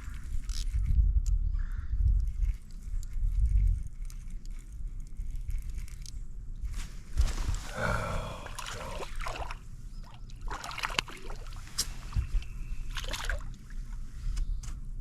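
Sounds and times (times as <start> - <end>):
steady low rumble: 0.0 - 10.5
water splashing beside a boat: 8.4 - 13.9.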